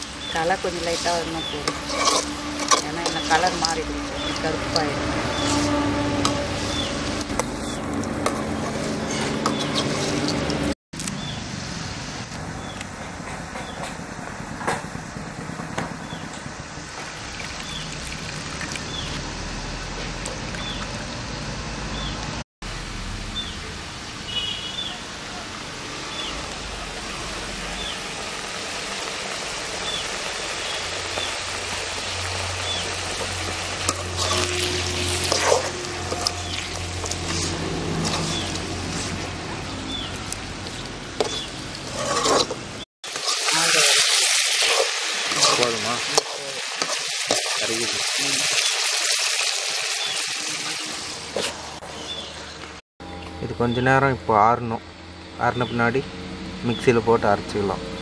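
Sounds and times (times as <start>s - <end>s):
leaves sizzling in a pan: 0.0s - 10.3s, 16.1s - 20.8s, 22.9s - 51.9s.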